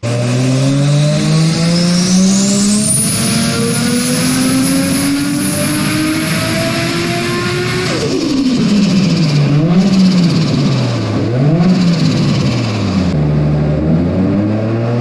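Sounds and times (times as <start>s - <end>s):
car engine accelerating hard: 0.0s - 15.0s
turbo whistle: 0.4s - 12.6s.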